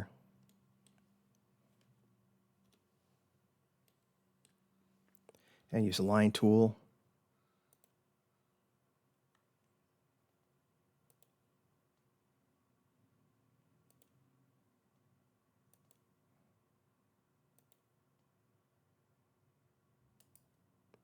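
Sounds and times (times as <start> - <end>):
faint computer mouse clicks: 0.4 - 1.9, 7.7 - 8.0, 11.1 - 11.4, 13.8 - 14.2, 15.7 - 16.1, 17.6 - 17.9, 20.2 - 21.0.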